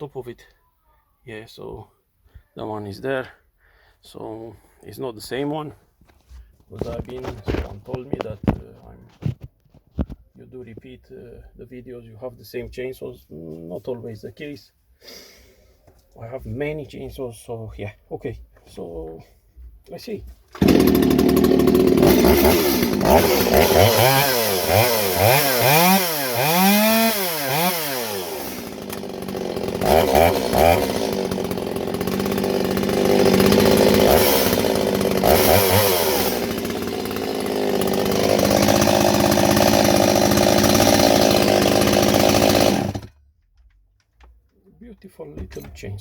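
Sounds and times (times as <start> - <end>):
chainsaw revving and idling: 20.5 - 43.2.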